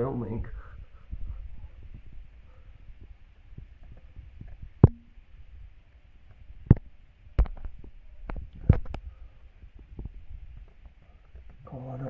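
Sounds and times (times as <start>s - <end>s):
fingers tapping device: 4.8s - 5.1s
knocks and bumps on device: 4.9s - 5.1s.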